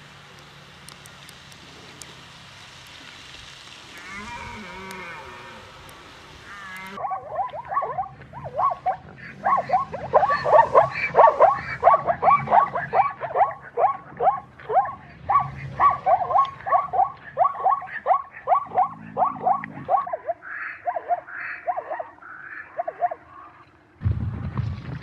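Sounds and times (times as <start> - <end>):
chorus of animal calls: 3.9 - 23.9.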